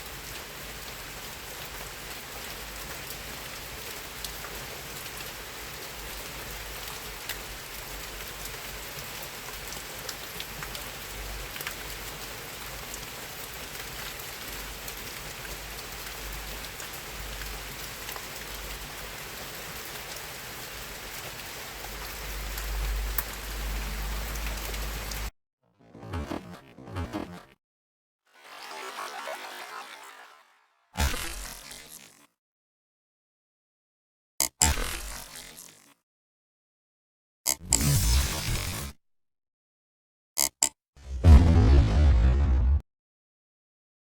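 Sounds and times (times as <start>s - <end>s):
steady rain falling: 0.0s - 25.3s
low rumble: 41.1s - 42.8s.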